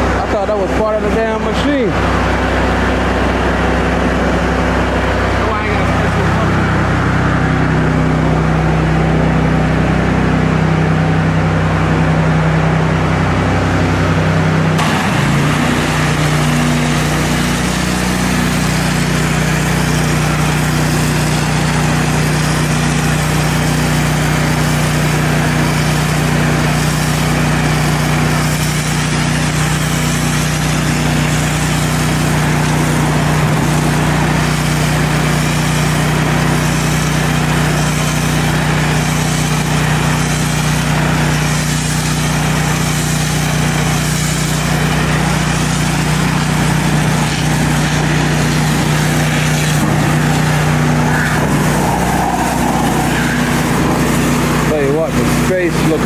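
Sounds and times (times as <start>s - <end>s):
pressure washer engine running: 0.0s - 56.0s
hiss of spray: 48.3s - 55.5s.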